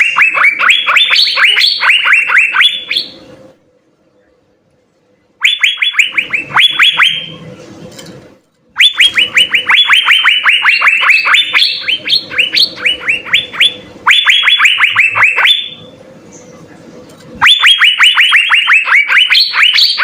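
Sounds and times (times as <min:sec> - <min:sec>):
bird singing whistled notes: 0:08.8 - 0:16.5.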